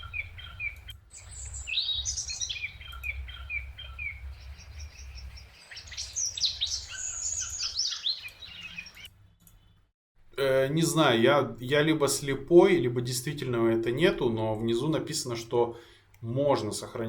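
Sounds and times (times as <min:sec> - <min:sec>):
birds chirping and twittering: 0:00.0 - 0:09.9.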